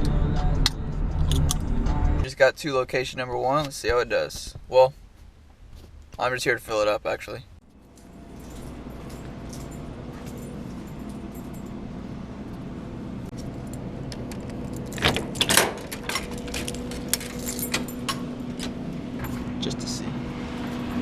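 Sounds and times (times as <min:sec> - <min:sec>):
steady low hum: 0:07.4 - 0:21.0
keys jangling: 0:07.8 - 0:12.6, 0:13.3 - 0:19.5.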